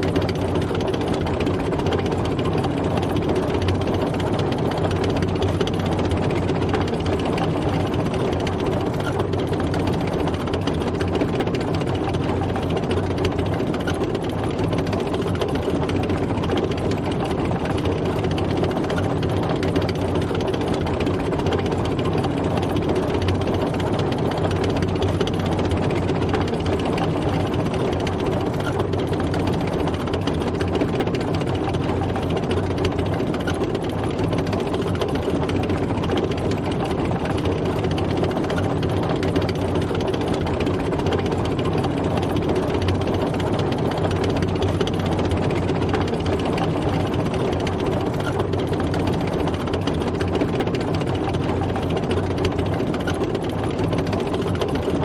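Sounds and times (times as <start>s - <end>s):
tank engine and tracks rumbling: 0.0s - 55.0s.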